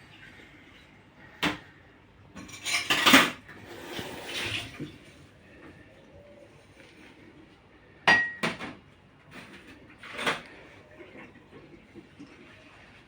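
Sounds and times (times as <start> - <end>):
clattering and rattling hard objects: 2.3 - 5.1, 8.2 - 12.8.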